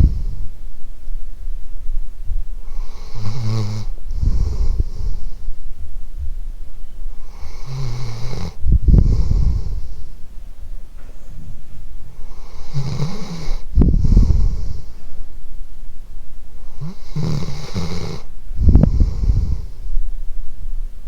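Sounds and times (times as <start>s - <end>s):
dog snoring: 0.0s - 0.5s, 2.6s - 5.5s, 7.1s - 10.2s, 12.1s - 15.0s, 16.6s - 19.9s.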